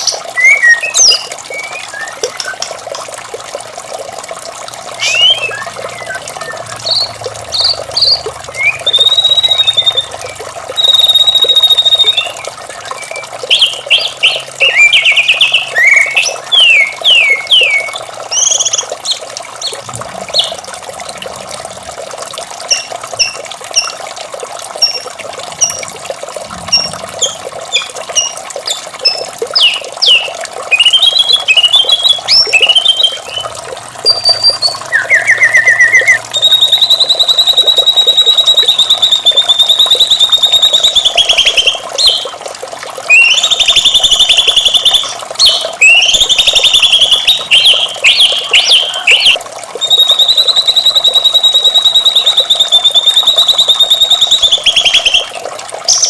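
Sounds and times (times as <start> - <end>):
bird singing whistles and trills: 0.0 - 2.7, 4.9 - 19.8, 22.7 - 23.9, 26.7 - 42.3, 43.1 - 56.0
running water: 0.0 - 56.0.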